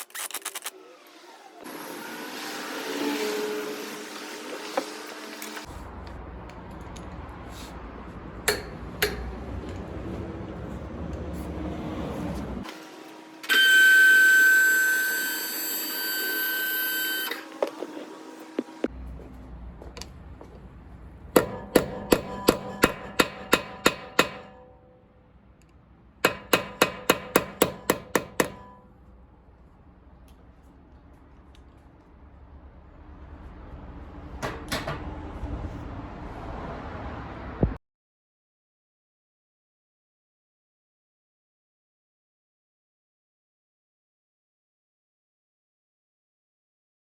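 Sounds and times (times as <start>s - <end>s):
hammer striking metal: 8.4s - 9.4s, 21.3s - 25.1s, 26.2s - 28.9s.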